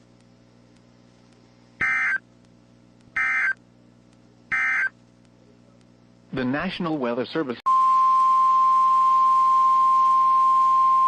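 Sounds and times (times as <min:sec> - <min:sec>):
faint steady hum: 0:00.0 - 0:11.0
buzzy digital alert bursts: 0:03.2 - 0:03.6.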